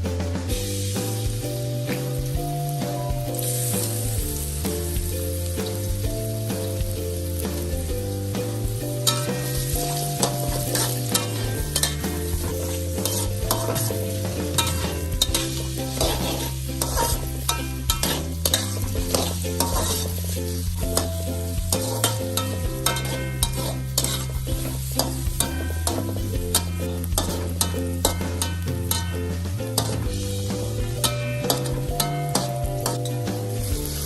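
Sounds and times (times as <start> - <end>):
food sizzling in a pan: 0.2 - 34.0
spatula scraping a pan: 8.4 - 34.0.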